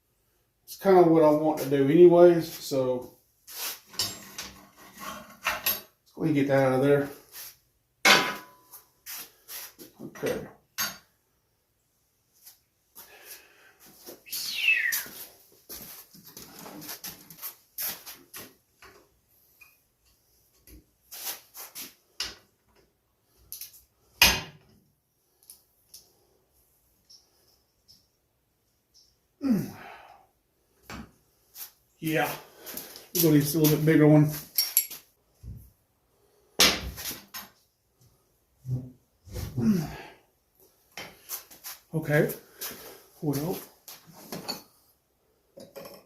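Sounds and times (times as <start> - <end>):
tools and metal parts clinking: 34.5 - 35.1.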